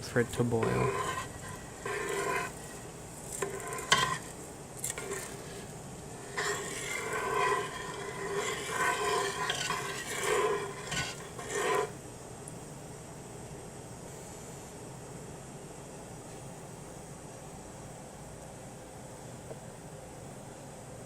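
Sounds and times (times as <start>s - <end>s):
utensil stirring rice in pot: 0.0s - 12.0s.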